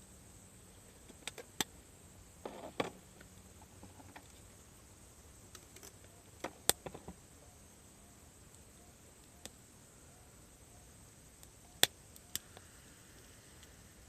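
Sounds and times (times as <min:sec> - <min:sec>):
campfire crackling and popping: 0:05.4 - 0:07.3, 0:11.3 - 0:14.0.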